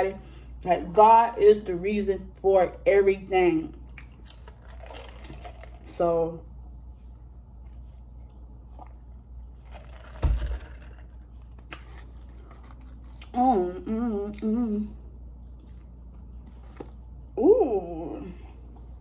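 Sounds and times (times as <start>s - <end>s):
woman humming: 13.4s - 15.0s, 17.4s - 18.4s.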